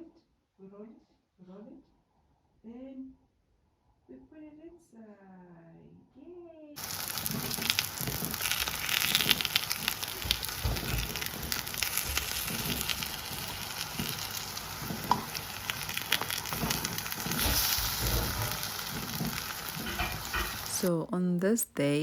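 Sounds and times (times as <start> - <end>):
food sizzling in hot oil: 6.8 - 20.9
dull knocks on pan: 10.1 - 14.2, 14.9 - 15.4.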